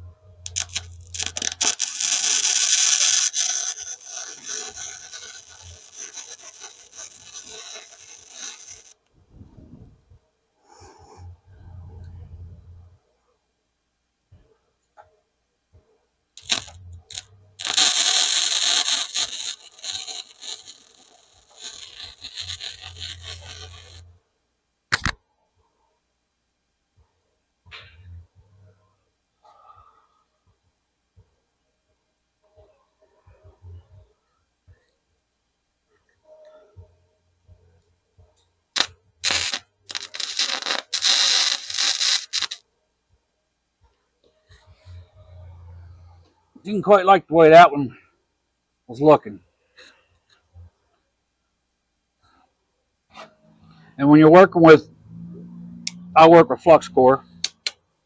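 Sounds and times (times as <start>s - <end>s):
welder arc crackling: 0.4s - 9.1s, 16.4s - 24.1s, 38.8s - 42.6s
low hum: 9.1s - 13.1s
sharp click: 24.9s - 25.2s.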